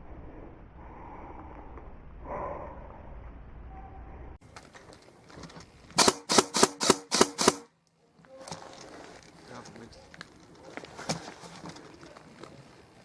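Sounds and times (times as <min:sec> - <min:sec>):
airsoft rifle shots: 0:06.0 - 0:07.7.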